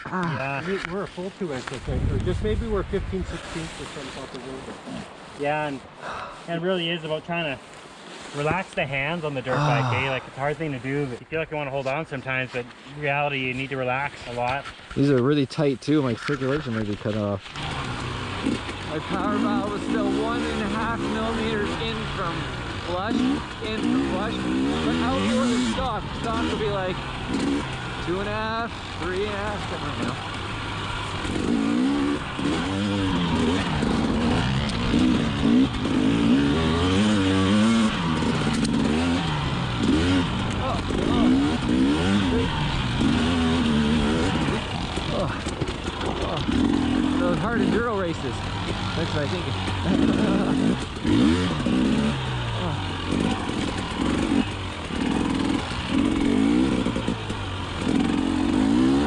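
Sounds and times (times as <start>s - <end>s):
dirt bike engine revving: 13.3s - 59.0s.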